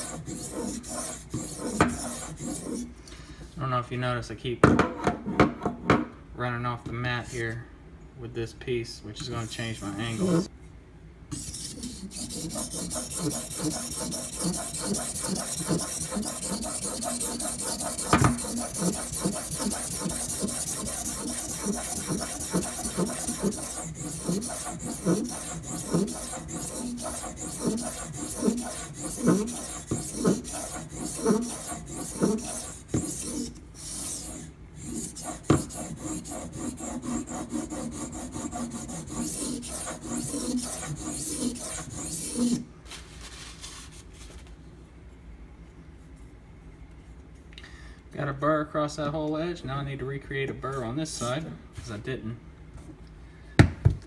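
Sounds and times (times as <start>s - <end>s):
knife grinding on sharpening stone: 0.0s - 2.8s, 11.3s - 42.6s.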